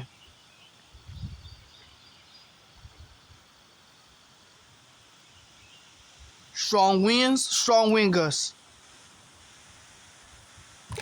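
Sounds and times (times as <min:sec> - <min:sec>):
wind hiss: 0:00.0 - 0:11.0
wind buffeting microphone: 0:00.9 - 0:01.8, 0:02.7 - 0:03.4.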